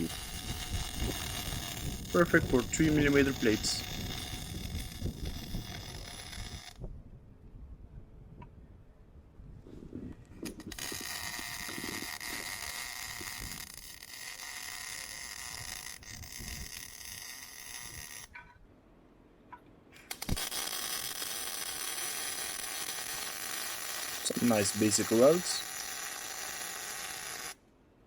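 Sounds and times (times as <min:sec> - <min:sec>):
welding arc: 0:00.0 - 0:06.8, 0:10.4 - 0:18.3, 0:20.0 - 0:27.6
welder click: 0:20.0 - 0:27.6.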